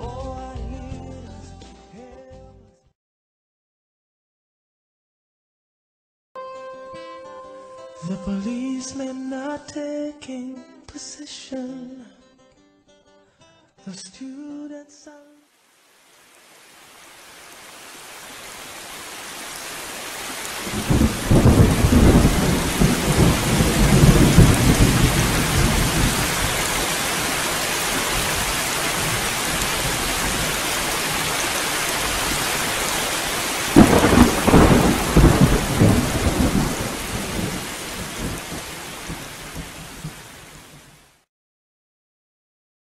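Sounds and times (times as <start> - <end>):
rain falling: 15.5 - 41.3
sharp thunderclap: 20.6 - 27.0, 33.6 - 40.2
thunder rumbling: 20.6 - 31.2, 33.3 - 40.2.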